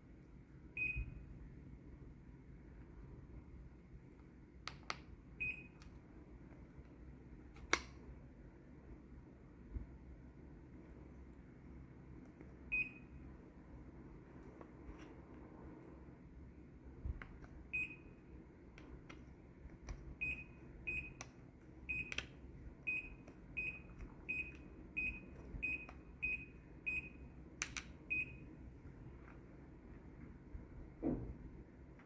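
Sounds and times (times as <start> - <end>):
steady low hum: 0.0 - 32.0
air conditioner short high beeps: 0.7 - 1.4, 5.4 - 5.8, 12.7 - 13.3, 17.7 - 18.3, 20.2 - 21.2, 21.8 - 22.2, 22.8 - 27.4, 28.0 - 28.6
sharp clicks: 27.6 - 27.9.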